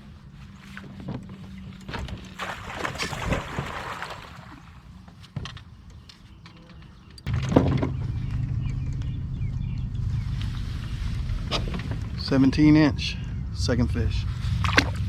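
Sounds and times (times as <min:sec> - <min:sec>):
water splashing beside a kayak: 0:00.4 - 0:05.2.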